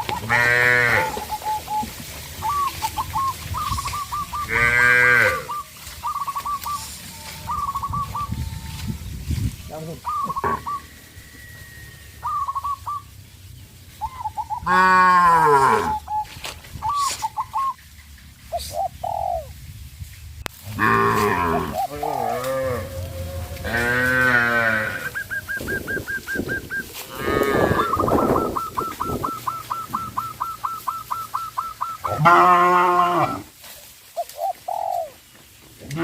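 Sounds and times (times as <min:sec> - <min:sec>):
birds calling high notes: 0:00.0 - 0:19.5, 0:20.6 - 0:33.5
cattle mooing: 0:00.2 - 0:01.2, 0:04.4 - 0:05.5, 0:20.7 - 0:25.2, 0:27.0 - 0:28.0, 0:32.1 - 0:33.4.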